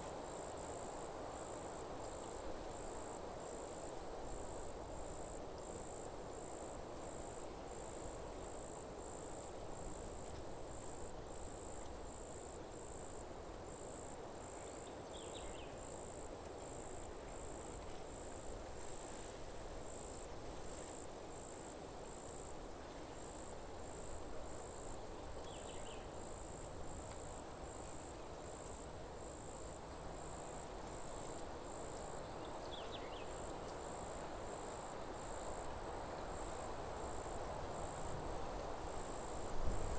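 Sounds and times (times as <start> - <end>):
insects chirping: 10.8 - 19.0, 20.8 - 39.9.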